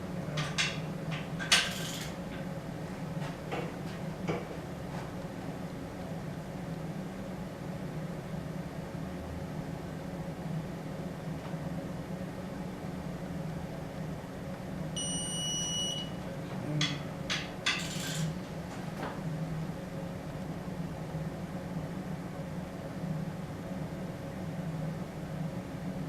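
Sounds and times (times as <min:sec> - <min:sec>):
steady low hum: 0:00.0 - 0:26.0
high electronic beep: 0:15.0 - 0:16.1.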